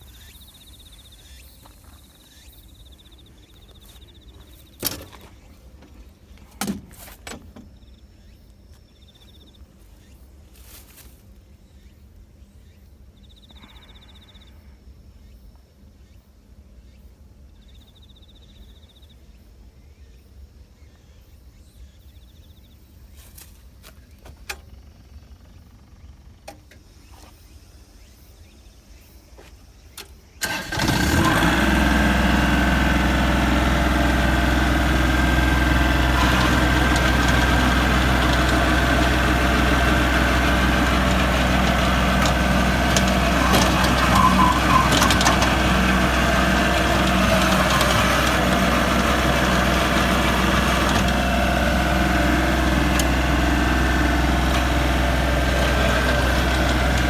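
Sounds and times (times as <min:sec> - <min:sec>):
wood chipper engine running: 0:30.4 - 0:57.0.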